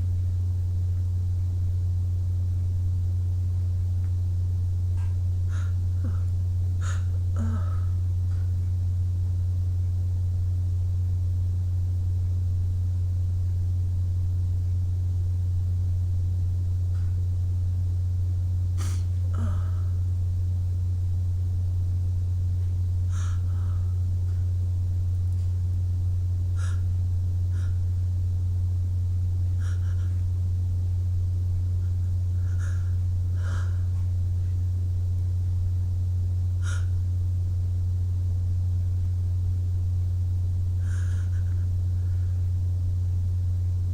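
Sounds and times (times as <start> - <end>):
steady low hum: 0.0 - 43.9
person breathing faintly: 5.4 - 8.8, 18.8 - 20.2, 23.0 - 24.5, 26.5 - 28.1, 29.4 - 30.4, 31.7 - 34.7, 36.6 - 37.1, 40.7 - 42.6.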